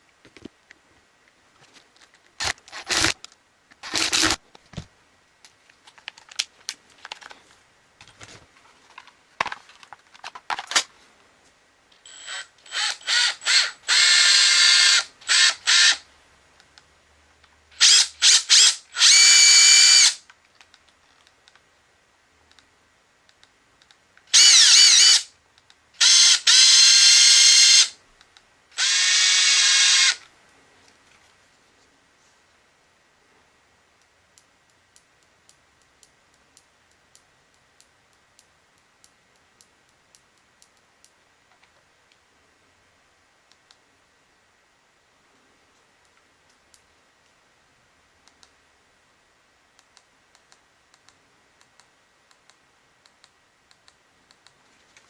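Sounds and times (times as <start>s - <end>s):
impact driver motor whine: 2.4s - 3.2s, 3.8s - 4.4s.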